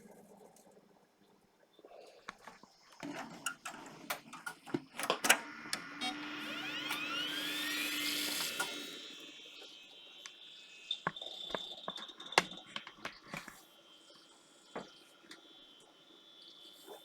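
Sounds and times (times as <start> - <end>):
drives spinning up whine: 2.2 - 17.0
handling clicks and knocks: 11.0 - 13.6.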